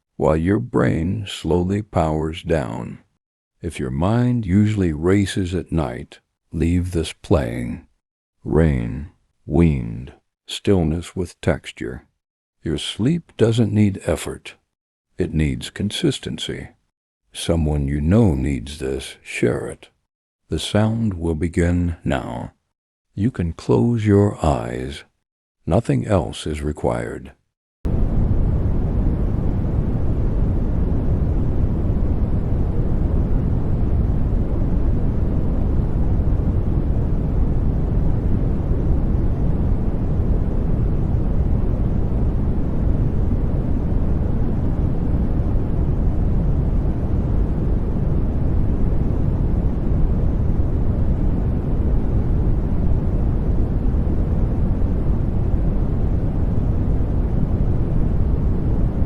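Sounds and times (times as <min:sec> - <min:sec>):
white noise: 0:27.9 - 0:59.0.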